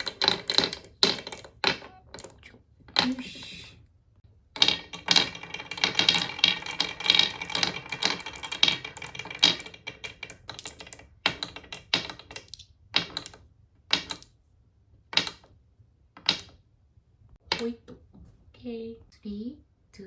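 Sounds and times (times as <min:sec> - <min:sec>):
marbles clattering down wooden run: 0:00.0 - 0:03.2, 0:04.6 - 0:14.3.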